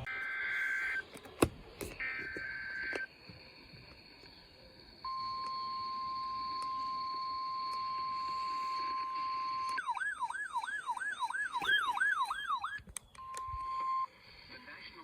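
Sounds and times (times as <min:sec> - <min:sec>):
steady alarm tone: 0:05.0 - 0:12.8
electronic siren wail: 0:05.1 - 0:14.1.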